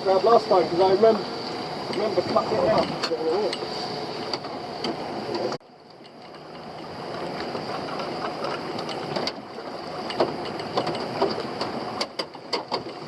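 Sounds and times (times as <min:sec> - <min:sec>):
boat engine running: 0:00.0 - 0:13.0
crab pots knocking and clattering: 0:06.1 - 0:13.0.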